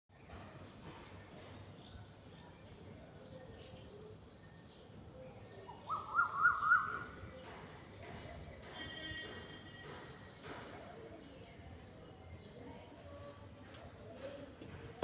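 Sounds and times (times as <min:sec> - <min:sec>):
faint high bird chirps: 0:05.4 - 0:07.6.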